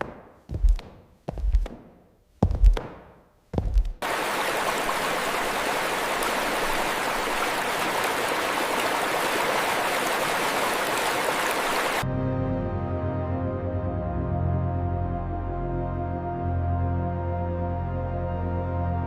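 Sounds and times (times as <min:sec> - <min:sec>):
stream water flowing: 0:04.0 - 0:12.0.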